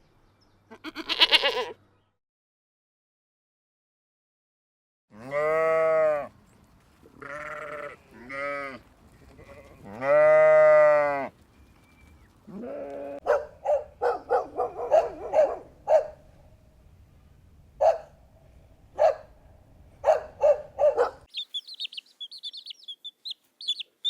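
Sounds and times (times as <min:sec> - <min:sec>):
livestock bleating: 0:00.7 - 0:01.8, 0:05.1 - 0:06.3, 0:07.1 - 0:08.8, 0:09.4 - 0:11.3, 0:12.5 - 0:13.2.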